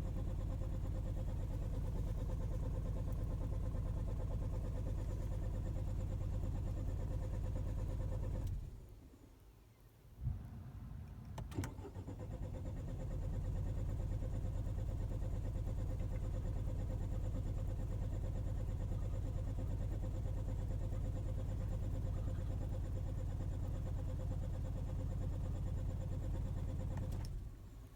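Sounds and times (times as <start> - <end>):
car engine idling: 0.0 - 8.8, 10.3 - 27.6
ignition clicks: 11.0 - 12.4, 26.7 - 27.5.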